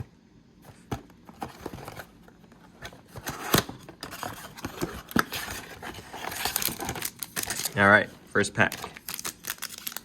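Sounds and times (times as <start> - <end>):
foil packs crinkling: 5.0 - 10.0.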